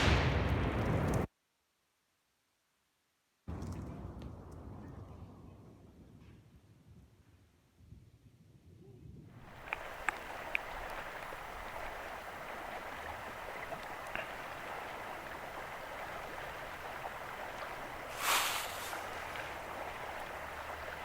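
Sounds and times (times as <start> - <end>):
light ticks: 9.5 - 18.1.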